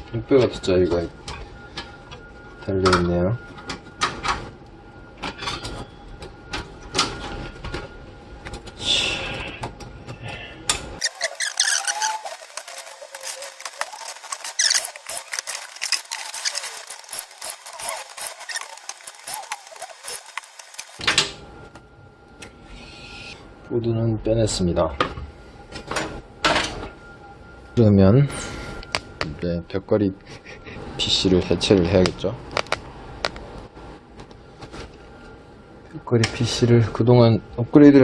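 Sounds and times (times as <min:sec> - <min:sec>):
hands clicking and scraping hardware: 0:11.0 - 0:21.0
squeaks: 0:11.0 - 0:21.0.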